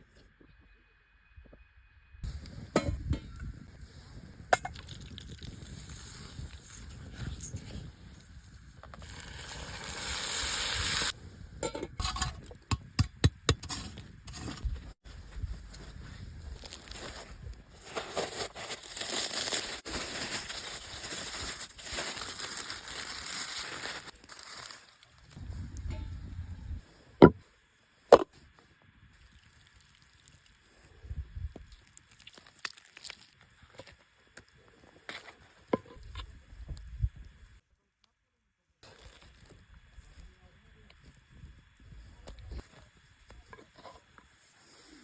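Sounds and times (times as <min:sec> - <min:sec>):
meat sizzling: 0:09.0 - 0:11.2.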